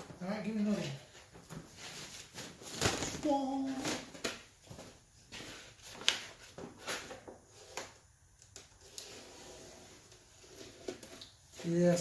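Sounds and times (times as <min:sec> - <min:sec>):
soft steady scratching: 0:08.6 - 0:12.0.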